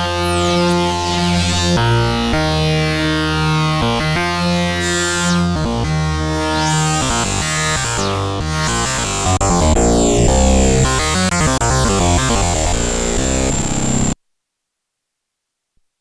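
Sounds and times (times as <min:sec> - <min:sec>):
heavy synth bass: 0:08.8 - 0:14.2
synthesizer fast run of notes: 0:08.8 - 0:14.2
falling synth sweeps: 0:09.2 - 0:14.2.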